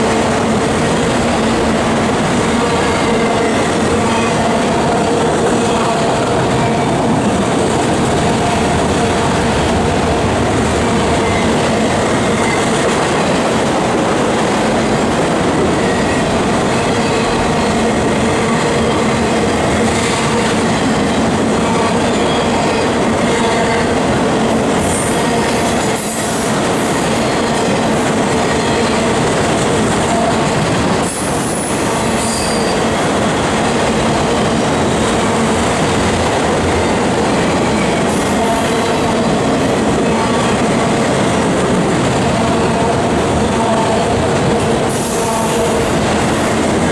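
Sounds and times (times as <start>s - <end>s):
steel wheels rolling on rail: 0.0s - 46.9s
high-pitched wheel squeal: 31.0s - 33.2s.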